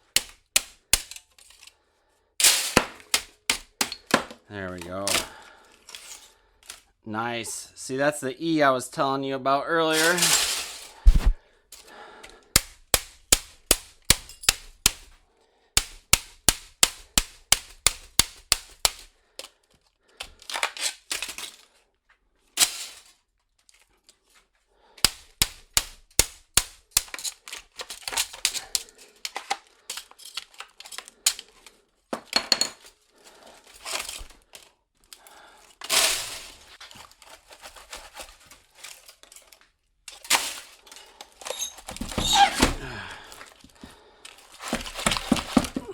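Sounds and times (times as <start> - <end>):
metallic scraping and clattering: 9.9 - 11.3.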